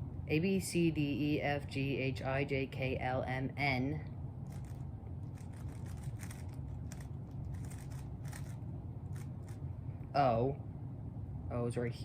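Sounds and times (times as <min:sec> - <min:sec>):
steady low hum: 0:00.0 - 0:12.0
puzzle cube clicking and scraping: 0:04.5 - 0:08.6.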